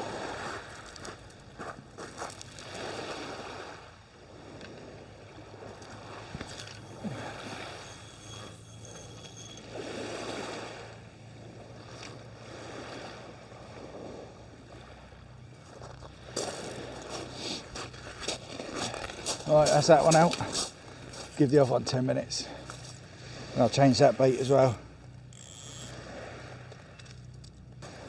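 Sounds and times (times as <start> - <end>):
small waves washing ashore: 0.0 - 28.0
faint low hum: 5.8 - 12.3.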